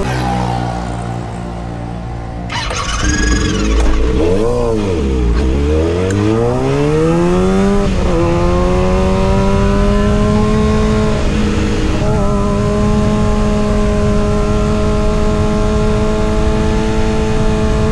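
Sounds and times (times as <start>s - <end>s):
motorcycle engine revving: 0.0s - 17.9s.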